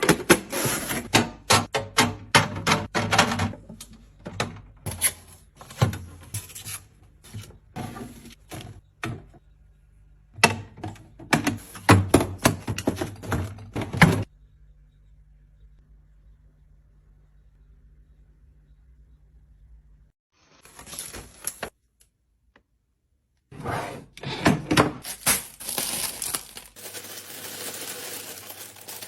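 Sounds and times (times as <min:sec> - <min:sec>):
faint low hum: 0:14.3 - 0:20.1
packages clicking and knocking: 0:25.0 - 0:29.0.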